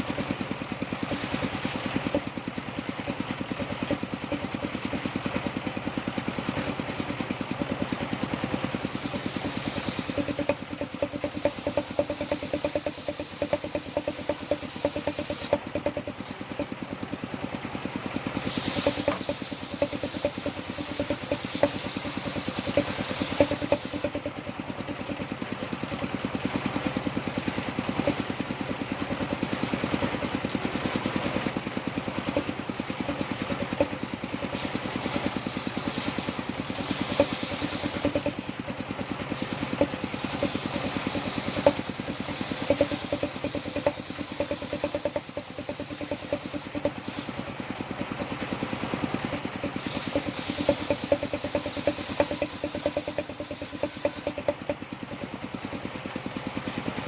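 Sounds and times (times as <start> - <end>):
engine running steadily: 0.0 - 57.0
irregular knocks: 9.1 - 16.7, 36.8 - 38.4, 39.8 - 47.0, 49.6 - 54.8.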